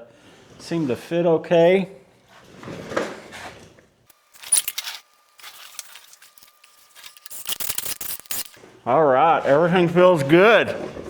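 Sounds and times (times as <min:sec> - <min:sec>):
metal bolts clicking and rattling: 0:04.1 - 0:08.6.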